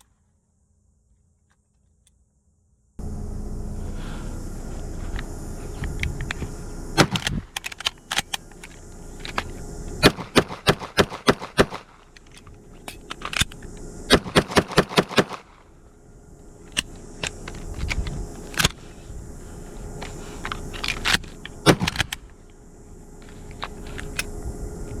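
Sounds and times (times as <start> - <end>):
gunshots: 10.0 - 12.0, 14.1 - 15.6.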